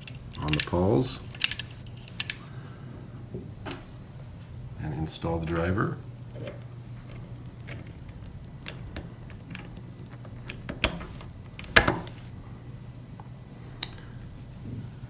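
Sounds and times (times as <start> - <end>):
small metal parts clicking and clinking: 0.0 - 2.5, 8.6 - 12.3
low steady hum: 0.0 - 15.0.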